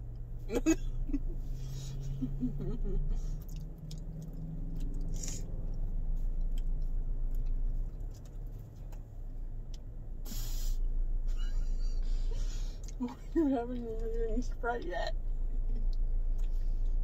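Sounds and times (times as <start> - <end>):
steady low hum: 0.0 - 17.0
chewing mouth sounds: 3.2 - 8.5.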